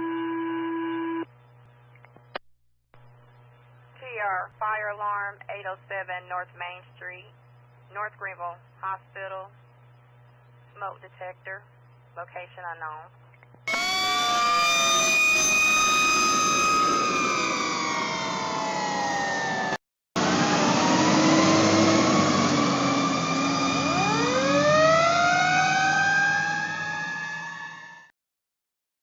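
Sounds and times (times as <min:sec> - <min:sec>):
fire truck sirens wailing: 0:13.7 - 0:28.1.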